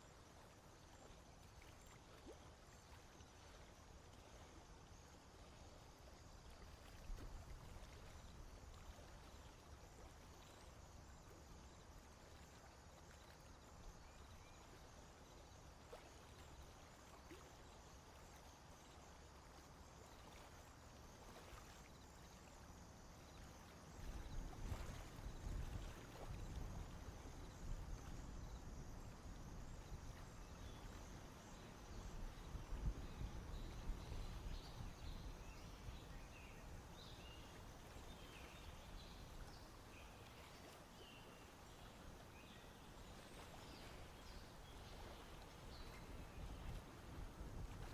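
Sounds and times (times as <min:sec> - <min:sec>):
soft steady hiss: 0:00.0 - 0:47.9.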